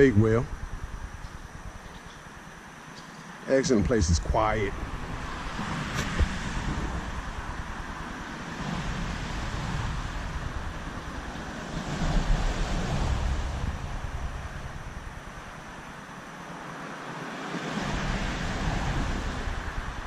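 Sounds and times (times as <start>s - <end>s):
traffic rumbling on bridge overhead: 0.0s - 11.5s
steady rushing hiss: 0.0s - 20.0s.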